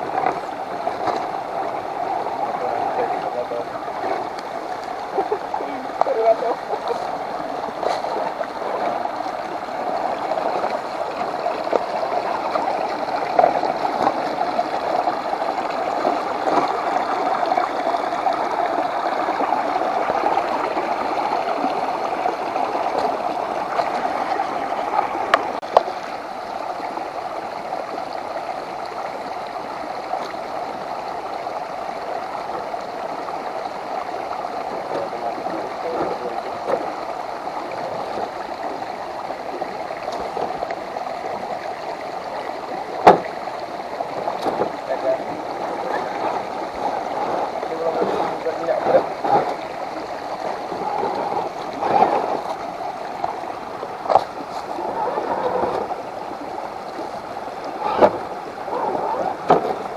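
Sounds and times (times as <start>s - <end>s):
running water gurgling: 0.0s - 59.9s.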